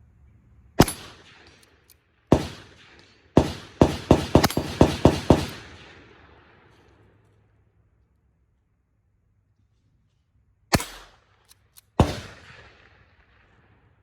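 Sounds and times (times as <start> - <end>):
pistol shots echoing: 0.8 - 1.7, 2.3 - 6.9, 10.7 - 13.7.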